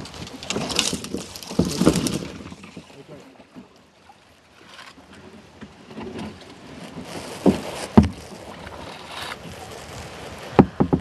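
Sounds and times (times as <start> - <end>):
paddle strokes splashing: 0.0 - 11.0
sharp knocks: 10.6 - 11.0.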